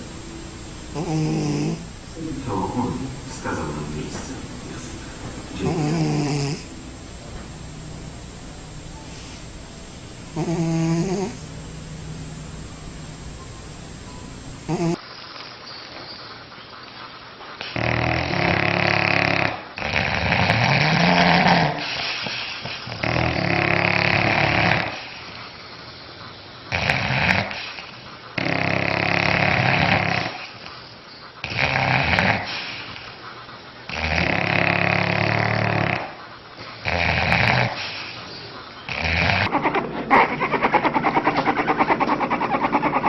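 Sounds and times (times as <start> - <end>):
pet snoring loudly: 0.0 - 6.9, 10.3 - 11.6, 14.6 - 15.0, 17.7 - 25.3, 26.7 - 30.7, 31.4 - 33.1, 33.9 - 39.5.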